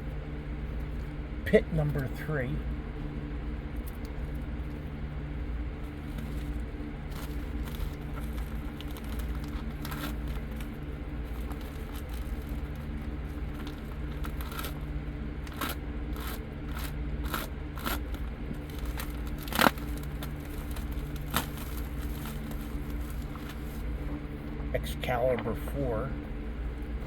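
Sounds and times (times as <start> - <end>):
steady low hum: 0.0 - 27.0
plastic sleeves crinkling: 5.9 - 24.3.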